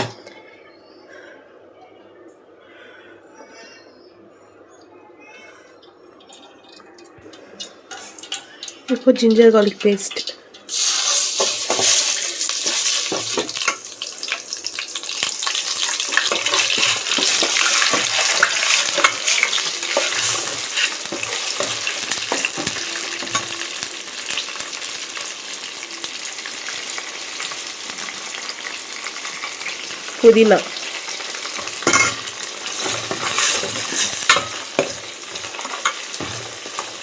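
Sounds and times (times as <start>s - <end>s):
spoon scraping and tapping pan: 7.6s - 13.9s, 15.7s - 23.6s, 31.5s - 37.0s
paste sizzling in hot oil: 10.7s - 37.0s.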